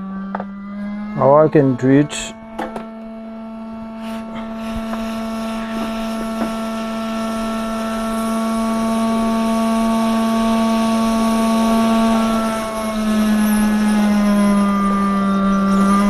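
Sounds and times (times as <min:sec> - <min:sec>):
hot air station fan whirring: 0:00.0 - 0:16.0.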